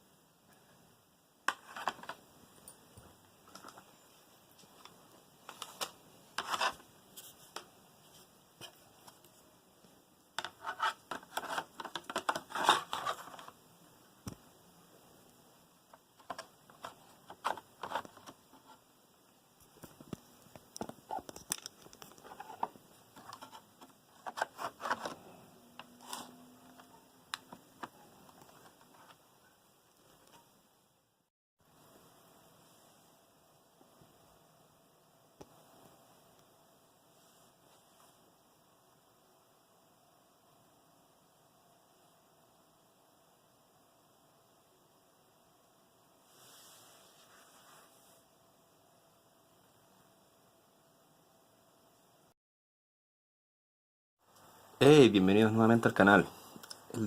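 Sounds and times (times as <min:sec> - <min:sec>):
handling clicks and scrapes: 0:10.4 - 0:13.6, 0:19.7 - 0:29.2.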